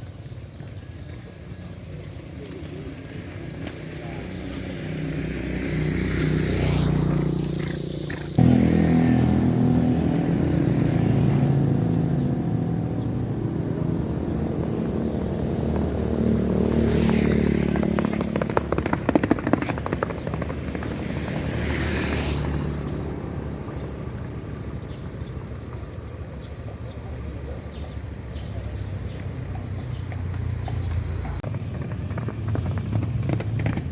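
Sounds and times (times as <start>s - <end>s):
engine running: 4.8s - 26.0s.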